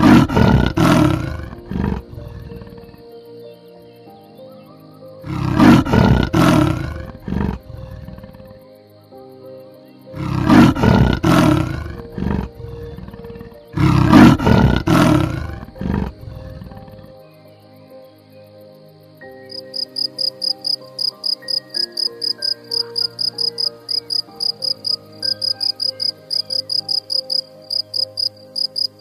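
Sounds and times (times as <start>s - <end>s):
large animal roaring: 0.0s - 3.0s, 5.2s - 8.6s, 10.1s - 17.1s
soft background music: 0.0s - 29.0s.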